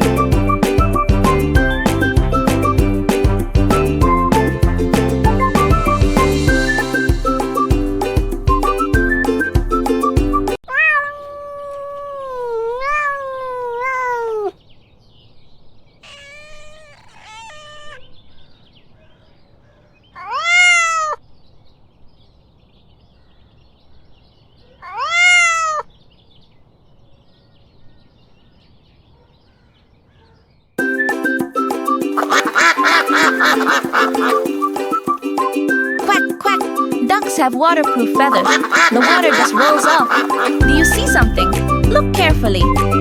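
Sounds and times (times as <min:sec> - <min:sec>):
cat meowing: 0:10.6 - 0:14.6, 0:16.0 - 0:18.1, 0:20.2 - 0:21.2, 0:24.8 - 0:25.9.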